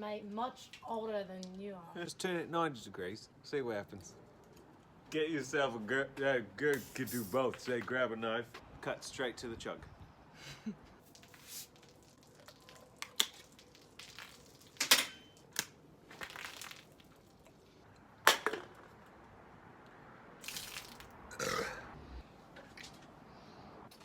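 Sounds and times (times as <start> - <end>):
beer cans cracking open: 11.0 - 17.6
cans being crushed: 11.1 - 17.1
person burping: 21.3 - 22.0.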